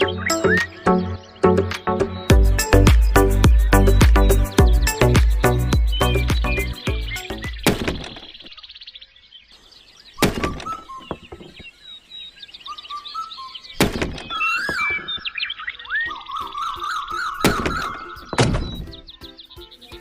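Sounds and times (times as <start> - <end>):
music: 0.0 - 7.6, 16.1 - 20.0
bird-like chirping: 0.0 - 20.0
loud sharp thuds: 7.6 - 8.5, 10.2 - 11.6, 13.8 - 15.2, 17.4 - 19.0.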